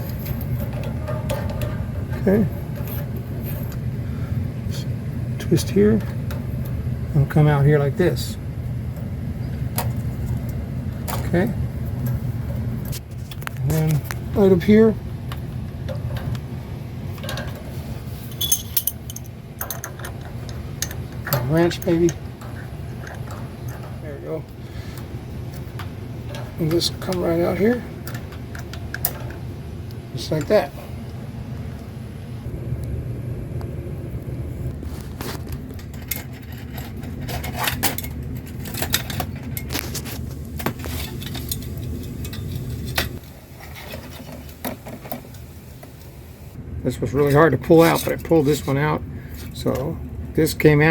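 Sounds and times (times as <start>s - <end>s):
steady low hum: 0.0s - 50.9s
metal clicks and scrapes: 17.1s - 29.5s, 34.9s - 45.2s.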